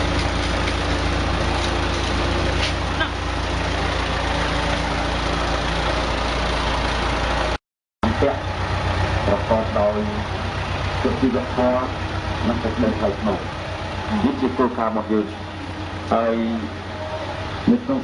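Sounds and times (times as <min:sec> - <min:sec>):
generator engine idling: 0:00.0 - 0:18.0.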